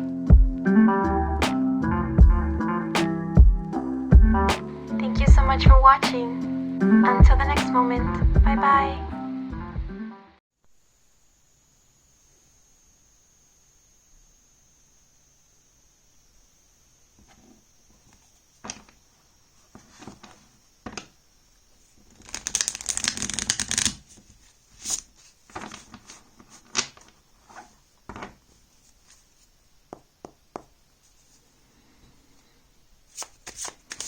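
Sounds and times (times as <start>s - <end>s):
rapid card flicking: 22.2s - 24.1s, 33.1s - 34.0s
cards tapping and sliding: 22.2s - 29.3s, 33.1s - 34.0s.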